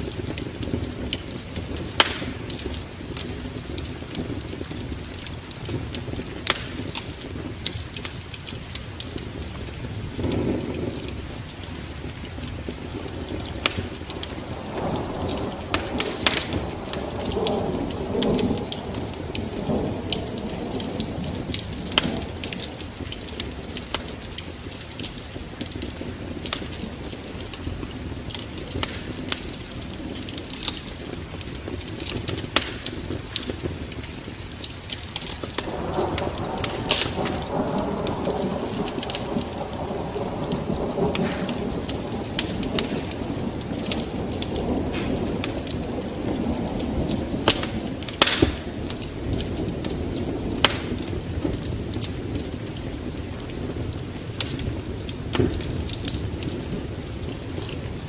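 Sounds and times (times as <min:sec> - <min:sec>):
low rumble of fire: 0:00.0 - 0:58.0
rush of flame: 0:00.0 - 0:58.0
wood fire crackling and popping: 0:00.0 - 0:58.0.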